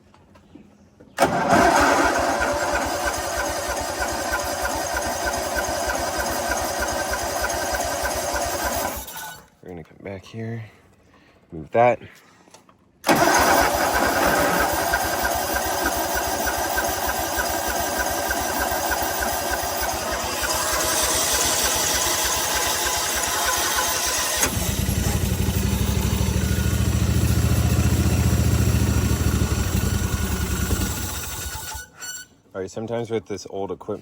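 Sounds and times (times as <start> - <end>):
mower engine running rough: 1.2 - 9.4, 13.0 - 31.9
mower engine cranking: 1.2 - 9.6, 13.0 - 32.4.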